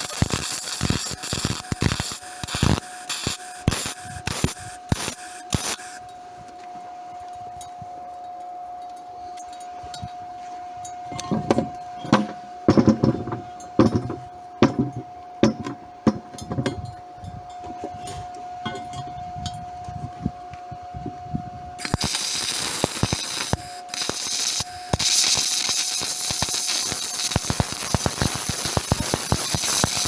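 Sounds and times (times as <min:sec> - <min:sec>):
steady high hum: 0:00.0 - 0:30.0
metal knocks and clinks: 0:11.2 - 0:17.0.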